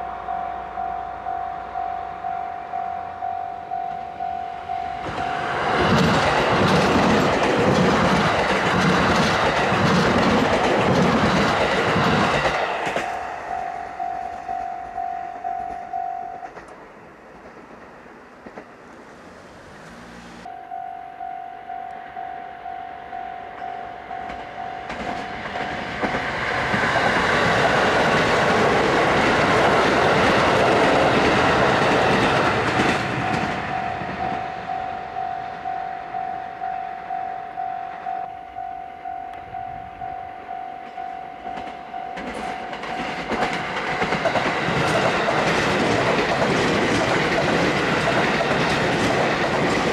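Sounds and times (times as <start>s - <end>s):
level-crossing alarm dings: 0.0s - 5.8s, 13.0s - 16.6s, 20.5s - 25.8s, 33.1s - 43.5s
train wheels rumbling and clattering: 4.9s - 20.5s, 23.6s - 34.8s, 40.9s - 49.9s.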